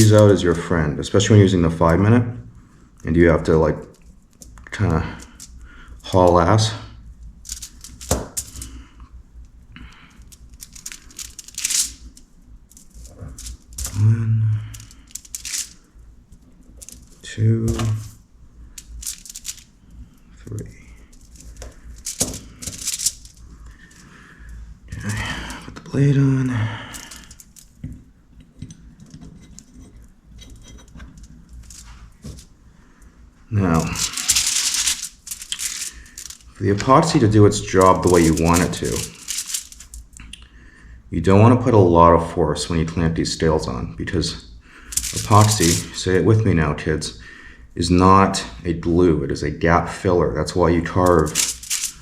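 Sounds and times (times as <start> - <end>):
handling clicks and crinkling: 3.8 - 8.8, 9.8 - 25.9, 26.8 - 32.5, 33.6 - 40.4, 44.9 - 46.1, 50.9 - 52.0
loud rustle: 21.1 - 24.0, 31.6 - 32.4, 33.8 - 39.9, 44.9 - 46.0, 51.0 - 52.0.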